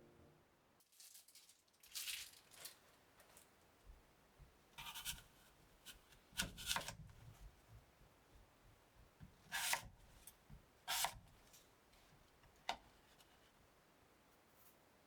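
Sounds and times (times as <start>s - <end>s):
rustling and scraping of kitchen items: 0.8s - 3.8s.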